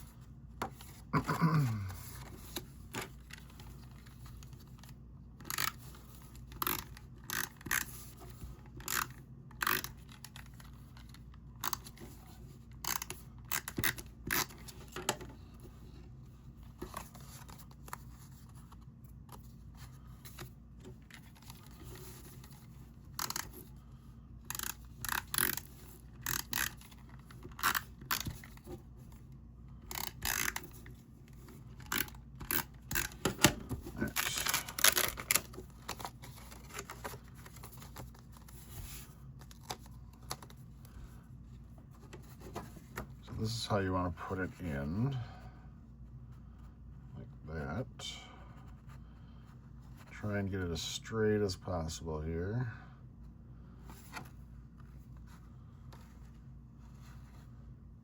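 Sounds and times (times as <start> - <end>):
low steady hum: 0.0 - 58.0
cardstock rustling and scraping: 1.9 - 43.7.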